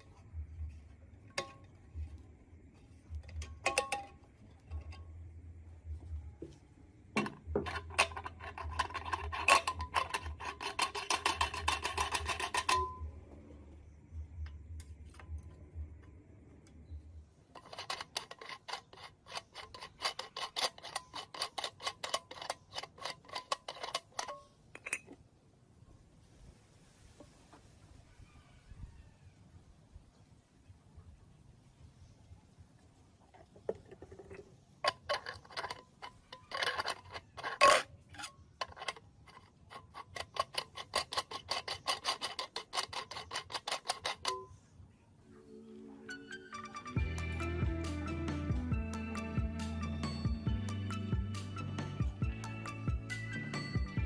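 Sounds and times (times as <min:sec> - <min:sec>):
low hum: 0:00.0 - 0:10.4, 0:12.5 - 0:17.6.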